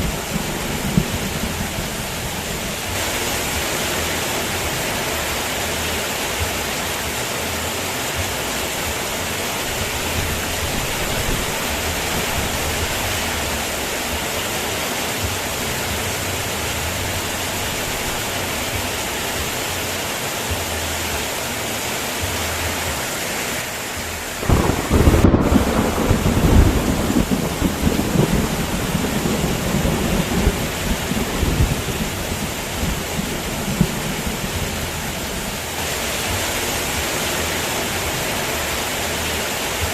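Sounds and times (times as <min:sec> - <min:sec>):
thunder clap and rumble: 0:00.0 - 0:03.6, 0:24.4 - 0:35.6
heavy rain: 0:00.0 - 0:39.9.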